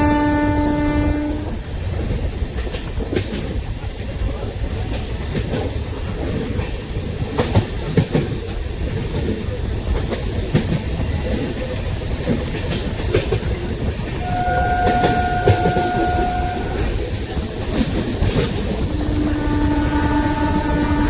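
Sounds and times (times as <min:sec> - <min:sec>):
high-pitched train horn blast: 0:00.0 - 0:01.6, 0:14.2 - 0:17.1, 0:19.0 - 0:21.0
low full train horn note: 0:00.0 - 0:01.6, 0:14.2 - 0:17.1, 0:18.9 - 0:21.0
train rail rumble: 0:00.0 - 0:21.0.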